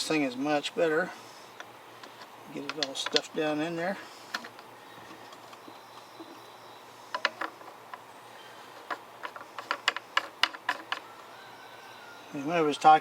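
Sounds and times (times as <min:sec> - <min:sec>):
small metal parts clicking: 0:08.8 - 0:11.2.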